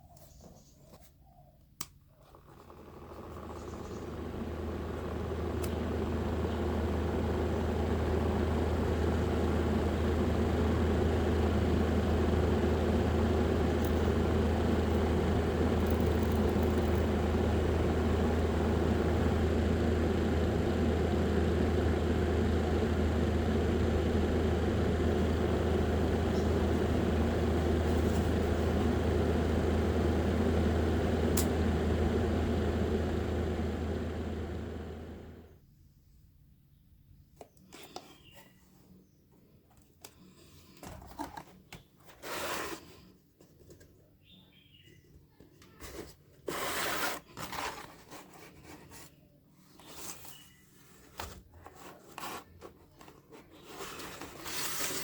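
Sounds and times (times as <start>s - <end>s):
small motor humming: 2.6s - 35.5s.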